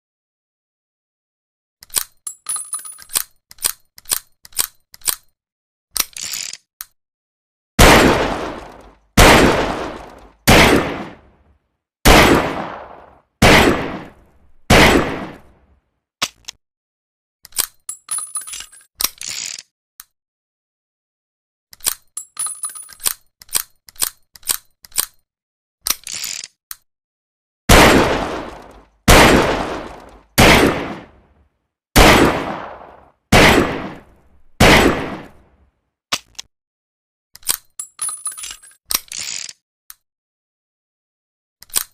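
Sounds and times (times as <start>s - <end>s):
short clicks: 41.6s - 41.9s.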